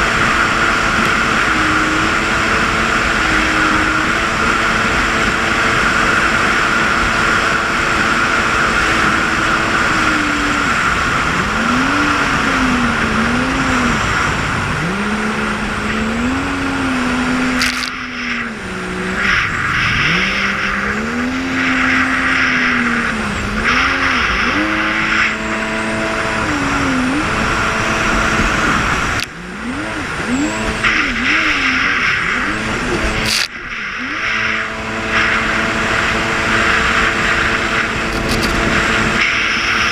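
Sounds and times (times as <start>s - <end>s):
jet ski engine revving: 0.0s - 39.9s
steady rushing noise: 0.0s - 39.9s.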